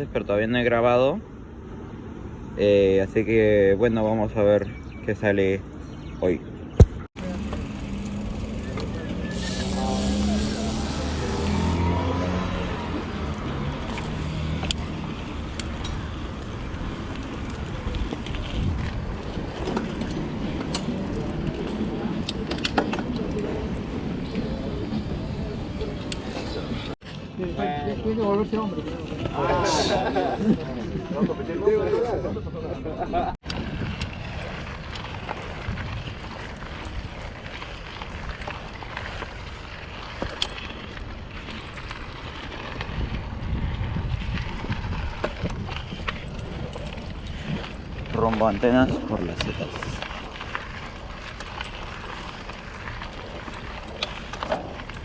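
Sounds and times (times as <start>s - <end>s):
bike tyres rumbling on trail: 6.8s - 30.7s, 33.4s - 55.0s
bike clicks and rattles: 13.0s - 26.8s, 33.4s - 55.0s
wind on microphone: 14.9s - 26.9s, 32.0s - 37.5s, 41.2s - 52.2s.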